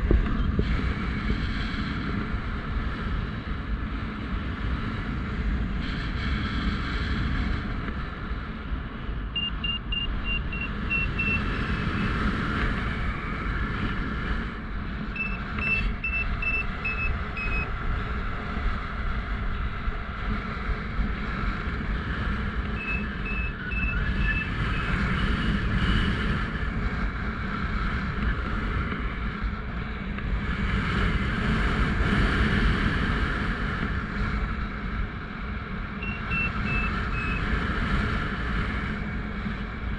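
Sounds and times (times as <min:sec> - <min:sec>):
wind rushing over microphone: 0:00.0 - 0:39.9
variometer high beeps: 0:09.4 - 0:11.5, 0:15.2 - 0:17.7, 0:22.7 - 0:24.9, 0:36.0 - 0:37.4.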